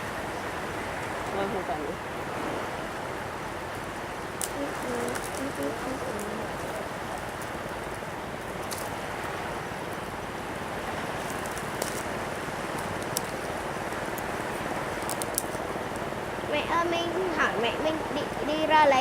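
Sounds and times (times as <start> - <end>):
steady rushing noise: 0.0 - 19.0
campfire crackles and pops: 11.2 - 16.1.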